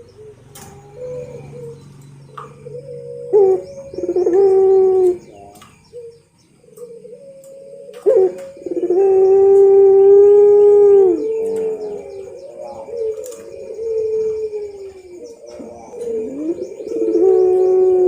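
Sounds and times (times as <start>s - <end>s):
dove cooing: 0.0s - 18.0s
small birds chirping: 0.0s - 18.0s.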